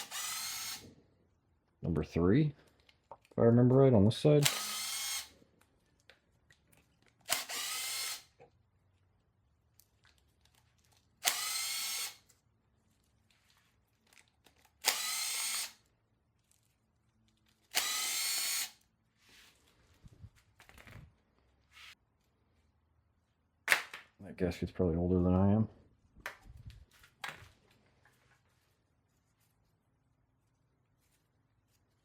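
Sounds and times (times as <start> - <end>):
handheld power tool bursts: 0.0 - 0.9, 4.4 - 5.4, 7.2 - 8.3, 11.2 - 12.2, 14.8 - 15.8, 17.7 - 18.8.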